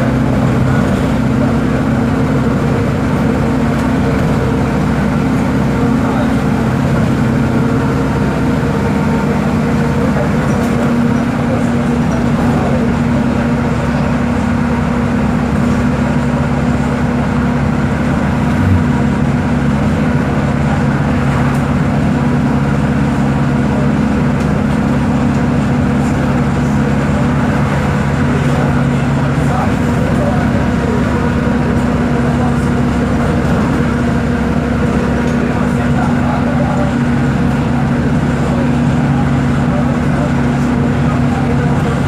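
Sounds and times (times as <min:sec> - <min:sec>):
diesel bus engine running: 0:00.0 - 0:42.0
low thump: 0:18.5 - 0:19.1.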